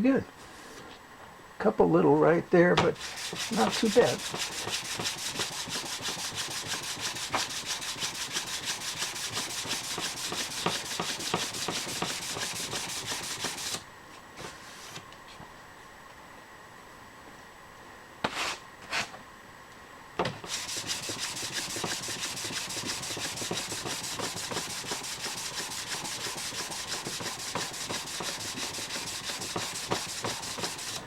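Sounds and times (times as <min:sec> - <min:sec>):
sandpaper rubbing on brass sheet: 0:03.0 - 0:13.8, 0:20.5 - 0:31.0.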